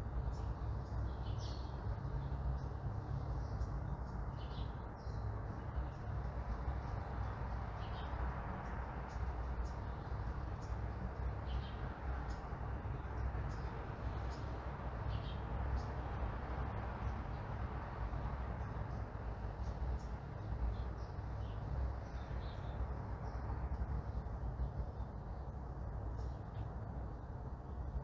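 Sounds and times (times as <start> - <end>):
distant traffic rumble: 0.0 - 28.0
small birds chirping: 0.1 - 28.0.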